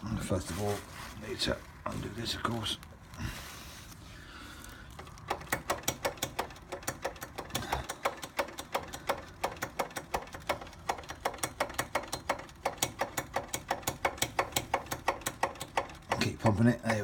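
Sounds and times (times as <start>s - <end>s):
brake lever clicking: 5.0s - 16.3s.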